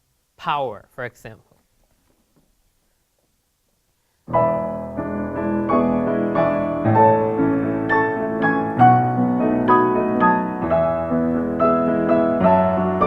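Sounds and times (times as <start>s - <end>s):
piano playing: 4.3s - 13.0s.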